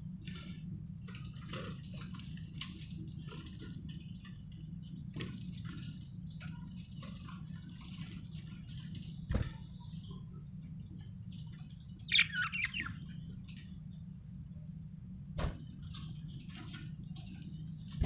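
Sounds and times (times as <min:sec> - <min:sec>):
budgerigar chirping: 0:12.1 - 0:13.1.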